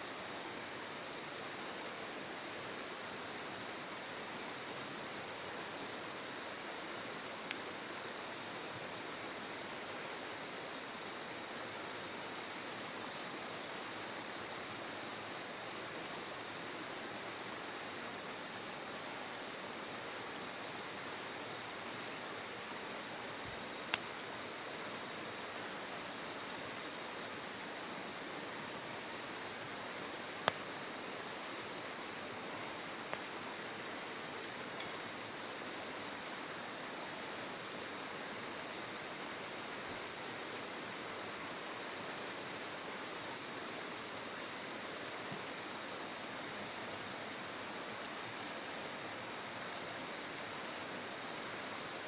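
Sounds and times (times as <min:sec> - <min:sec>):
campfire cracking: 0:23.9 - 0:24.1, 0:30.4 - 0:30.7.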